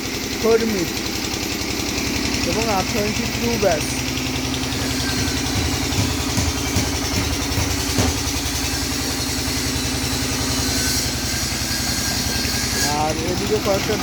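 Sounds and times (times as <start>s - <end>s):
engine running: 0.0s - 14.0s
sharp knock: 5.2s - 8.4s.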